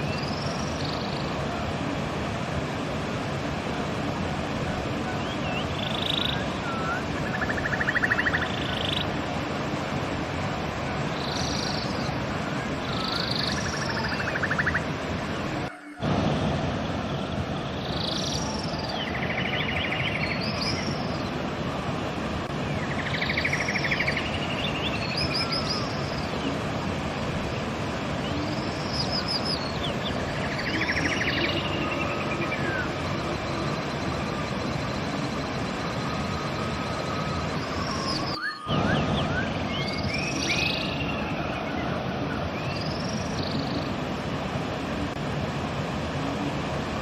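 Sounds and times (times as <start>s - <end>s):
songbirds singing trills: 0.0s - 1.4s, 5.0s - 9.3s, 11.0s - 15.1s, 17.6s - 21.4s, 22.5s - 27.3s, 28.0s - 44.4s
river water rushing: 0.0s - 47.0s.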